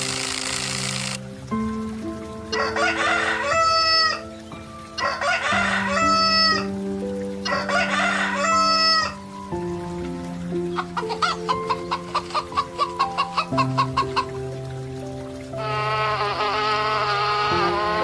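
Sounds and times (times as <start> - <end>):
background music: 0.0 - 18.0
rooster crowing: 2.5 - 4.2, 5.0 - 6.6, 7.5 - 9.2.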